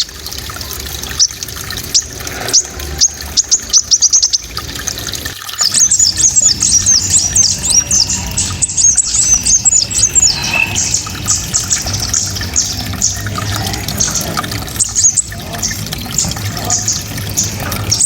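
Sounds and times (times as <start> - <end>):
songbird rapid chirping: 5.5 - 18.0.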